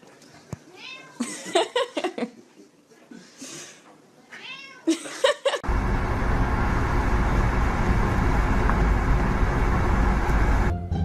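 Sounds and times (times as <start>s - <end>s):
cat meowing: 0.7s - 1.2s, 4.4s - 4.9s
loud steady rushing noise: 5.6s - 10.7s.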